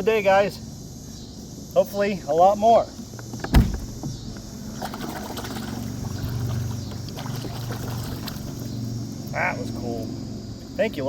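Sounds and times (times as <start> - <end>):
motorboat engine droning: 2.3 - 11.0
hard thump: 3.4 - 4.5.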